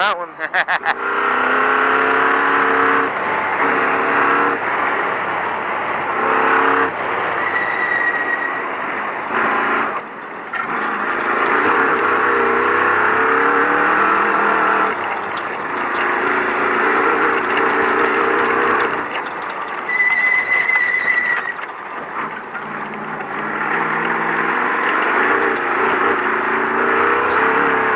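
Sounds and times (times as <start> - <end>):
truck engine revving: 0.0 - 27.9
thin high whistle: 7.4 - 8.7, 19.9 - 21.5, 27.3 - 27.9
tyre and gravel rush: 9.2 - 27.9.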